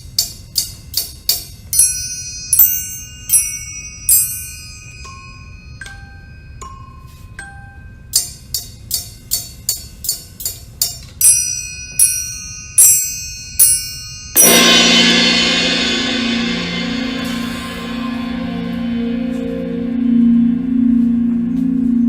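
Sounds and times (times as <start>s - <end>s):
bell-like strikes: 1.7s - 7.2s, 11.2s - 22.0s
mallet-struck notes: 11.2s - 22.0s
cymbal crash: 13.9s - 21.6s
low pulsing drone: 14.4s - 22.0s.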